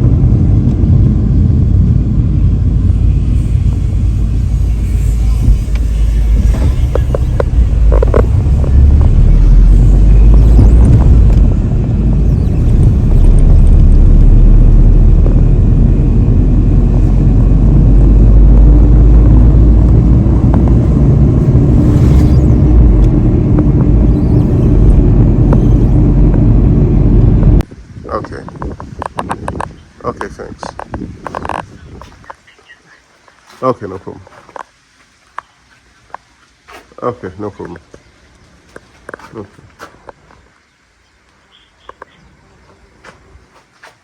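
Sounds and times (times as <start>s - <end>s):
car interior road rumble: 0.0s - 27.9s.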